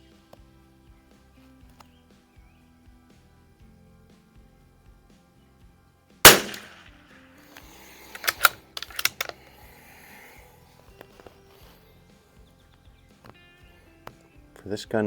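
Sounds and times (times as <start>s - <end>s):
rifle bolt metallic clicks: 6.3s - 6.8s, 7.6s - 9.4s
rifle shot: 6.3s - 6.9s.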